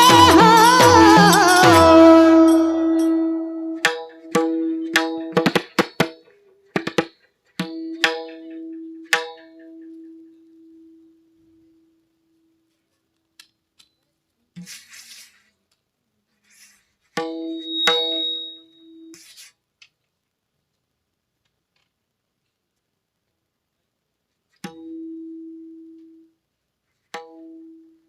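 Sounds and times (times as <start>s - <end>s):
hand drum strokes ringing: 0.0s - 9.7s, 17.2s - 18.8s
faint rustle: 14.6s - 17.2s.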